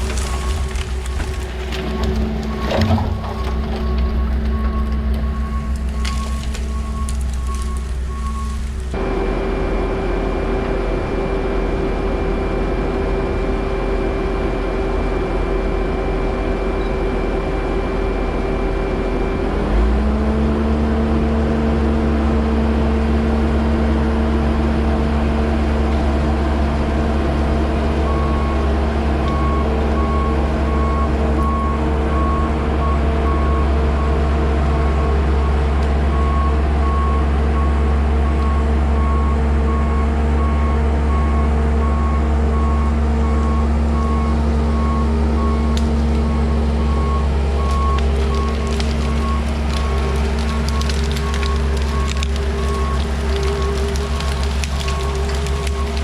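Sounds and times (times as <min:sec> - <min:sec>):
skid steer engine running: 0:00.0 - 0:56.0
backup alarm beeping: 0:02.0 - 0:08.7.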